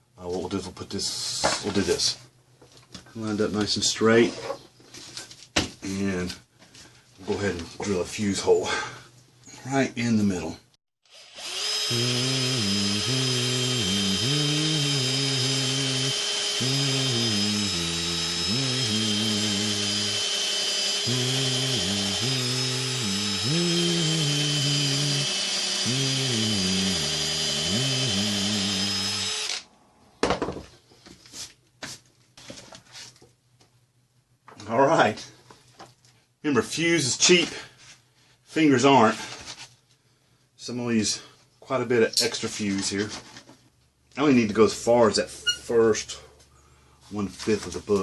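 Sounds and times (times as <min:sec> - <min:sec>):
power drill boring through book: 0:11.1 - 0:29.7.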